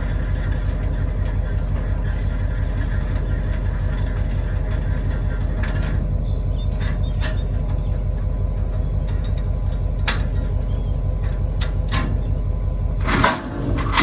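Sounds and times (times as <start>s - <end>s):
loud rattle: 0.0s - 12.4s, 13.0s - 14.0s
diesel engine running: 0.0s - 14.0s
sharp clicks and knocks: 8.7s - 10.6s, 11.2s - 12.2s.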